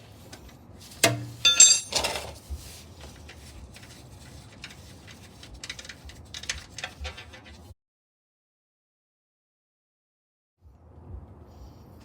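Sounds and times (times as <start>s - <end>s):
sharp metal knock: 1.0s - 1.9s
ringing metallic clinks: 1.4s - 2.1s.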